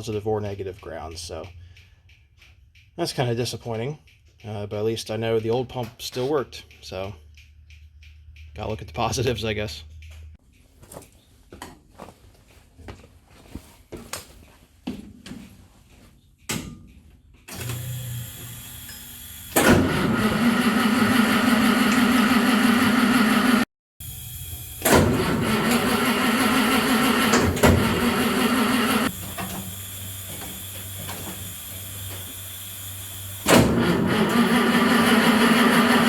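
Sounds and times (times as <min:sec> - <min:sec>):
small electric motor whining: 0:17.6 - 0:36.0.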